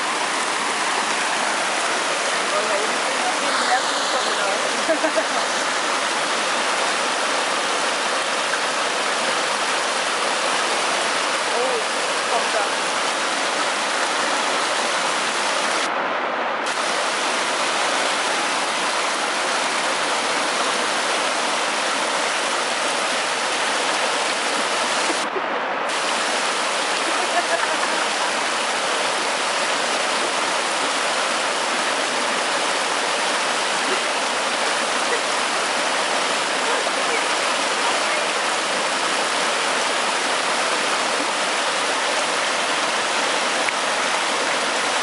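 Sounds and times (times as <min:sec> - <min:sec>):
waves washing in: 0:00.0 - 0:45.0.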